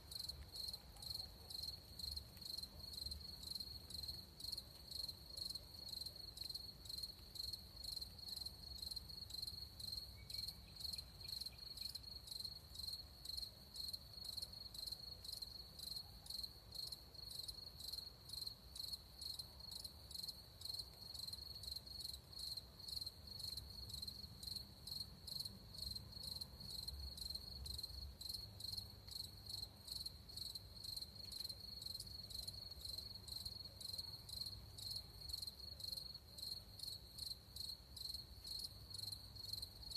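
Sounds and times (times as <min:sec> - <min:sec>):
crickets chirping: 0:00.1 - 0:39.9.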